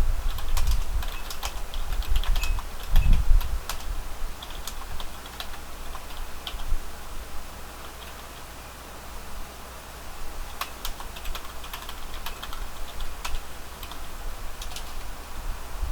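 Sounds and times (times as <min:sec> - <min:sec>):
typing on keyboard: 0:00.3 - 0:06.7, 0:07.8 - 0:08.5, 0:10.5 - 0:15.1.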